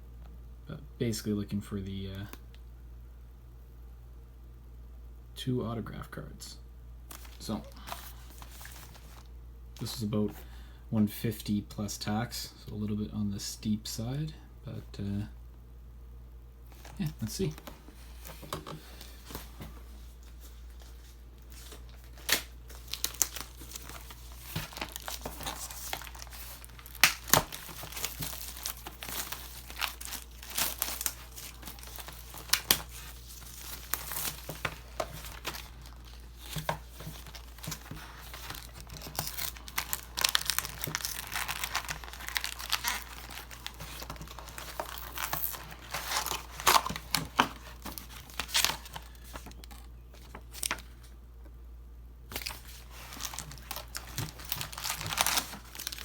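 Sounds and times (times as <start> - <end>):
foil packs rustling: 16.7 - 51.1, 52.3 - 56.0
plastic wrapping crinkling and tearing: 20.2 - 51.1, 52.3 - 56.0.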